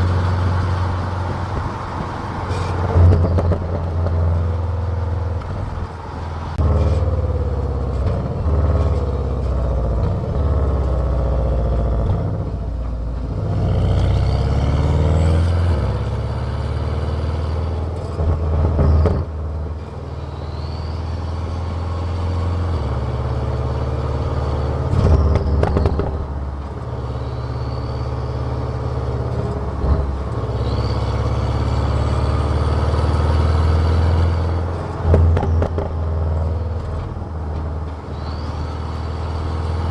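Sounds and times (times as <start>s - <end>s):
car exhaust drone: 0.0s - 39.9s.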